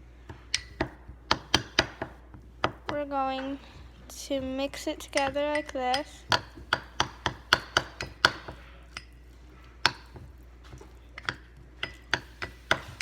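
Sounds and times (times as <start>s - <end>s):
utensil knocking against a bowl: 0.3s - 3.5s, 4.4s - 9.2s, 9.8s - 13.0s.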